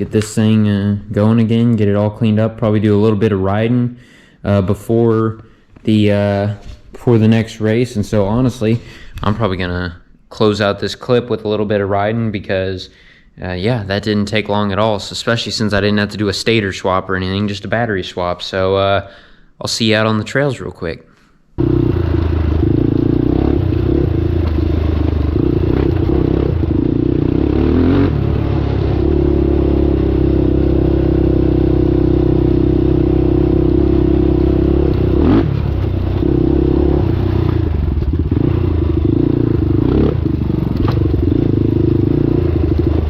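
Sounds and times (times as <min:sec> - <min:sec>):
quad bike engine revving: 0:21.6 - 0:43.0.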